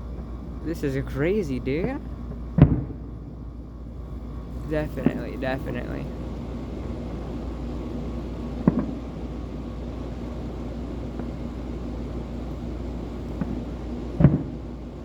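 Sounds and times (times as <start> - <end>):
low outdoor rumble: 0.0 - 15.0
distant firework bang: 2.6 - 3.0, 8.6 - 9.0, 14.2 - 14.6
faint firework pop: 8.7 - 9.0.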